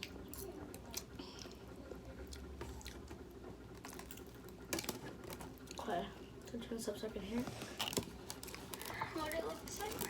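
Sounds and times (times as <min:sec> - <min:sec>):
faint chewing: 0:00.0 - 0:05.9.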